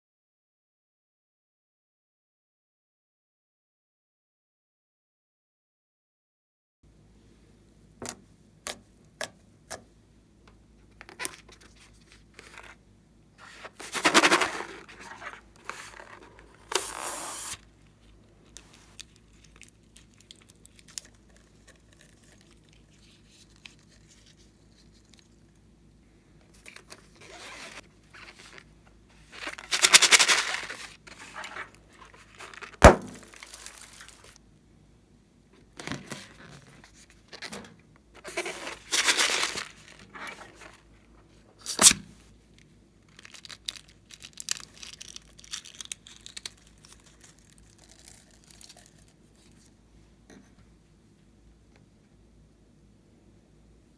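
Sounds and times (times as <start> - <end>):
crinkling and scraping: 10.9 - 12.8, 13.4 - 25.4, 26.5 - 34.4, 35.8 - 50.6.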